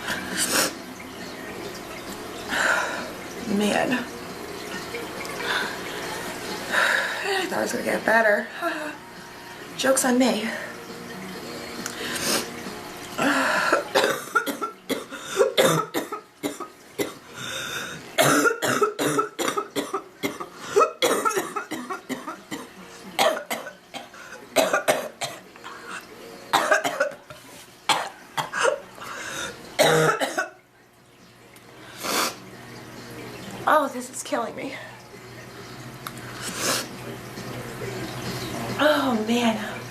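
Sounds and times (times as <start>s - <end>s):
woman coughing hard: 13.6s - 17.2s, 18.2s - 25.4s, 26.5s - 27.2s, 29.8s - 30.6s.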